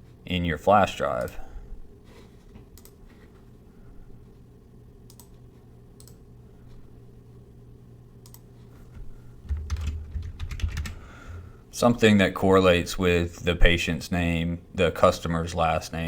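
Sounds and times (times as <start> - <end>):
low steady hum: 0.0 - 16.0
computer mouse clicks: 2.7 - 3.0, 5.1 - 5.4, 6.0 - 6.2, 8.2 - 8.5.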